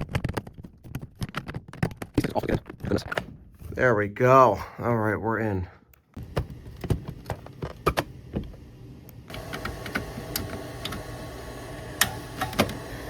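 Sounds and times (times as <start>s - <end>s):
steady hum with faint tone: 5.5s - 13.0s.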